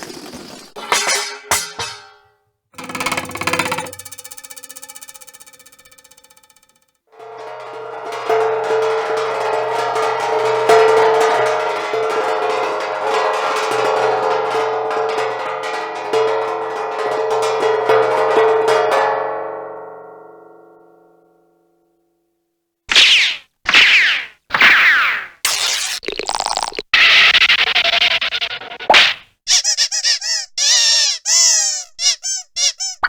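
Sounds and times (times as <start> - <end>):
cartoon music: 29.5 - 33.0.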